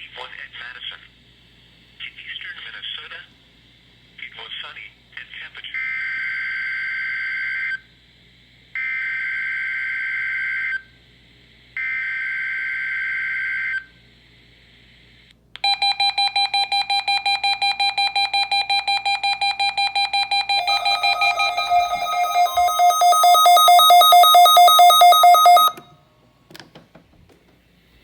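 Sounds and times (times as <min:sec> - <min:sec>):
second radio alarm: 0:20.3 - 0:25.8
rapid electronic alert beeping: 0:20.4 - 0:25.8.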